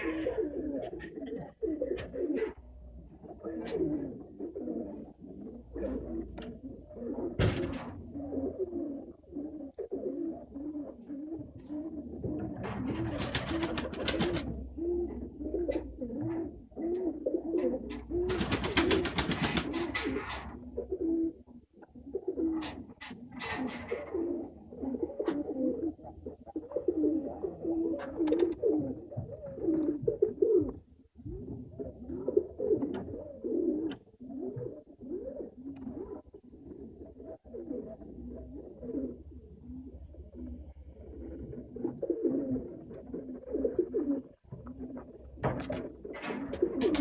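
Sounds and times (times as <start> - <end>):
pigeons cooing: 0.0 - 47.0
wings fluttering: 12.8 - 14.6, 18.1 - 20.2, 46.5 - 47.0.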